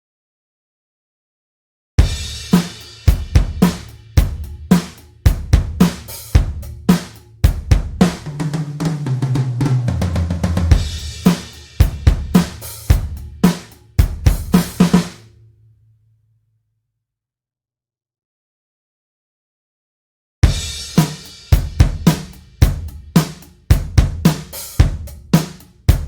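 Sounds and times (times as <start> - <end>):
drum kit groove: 2.0 - 15.2, 20.4 - 26.0.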